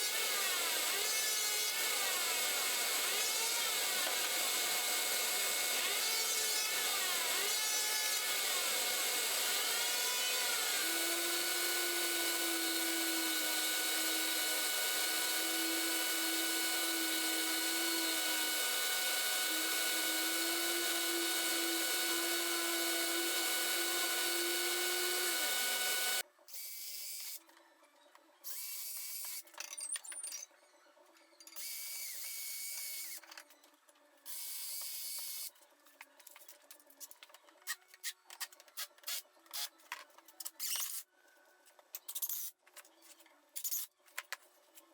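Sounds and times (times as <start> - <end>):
handheld power tool running: 0.0 - 26.2.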